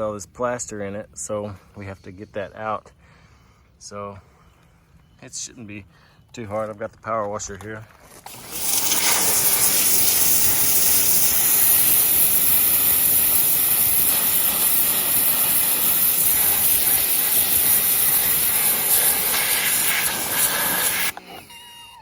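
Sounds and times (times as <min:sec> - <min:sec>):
pressure washer spraying stone: 0:08.2 - 0:21.5.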